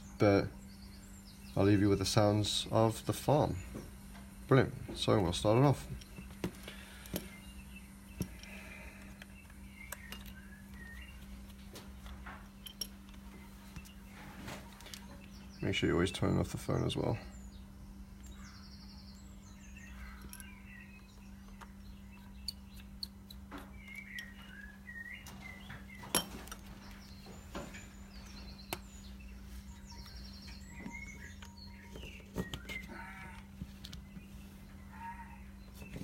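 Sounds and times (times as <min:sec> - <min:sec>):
birds chirping: 0:00.0 - 0:36.0
steady low hum: 0:00.0 - 0:36.0
small tools clicking and tapping: 0:08.2 - 0:14.0, 0:20.1 - 0:26.7
farm animal calling: 0:26.9 - 0:36.0.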